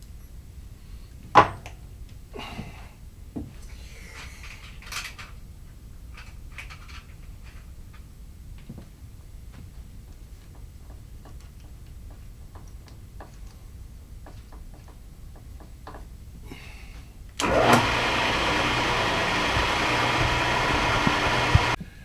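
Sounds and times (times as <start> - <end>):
drill press motor running: 17.4 - 21.8.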